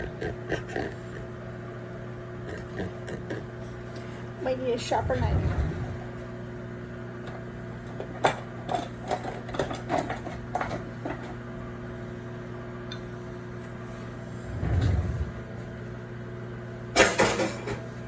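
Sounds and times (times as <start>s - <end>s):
steady low hum: 0.0s - 18.0s
dull low bump: 4.9s - 6.3s, 14.4s - 15.8s.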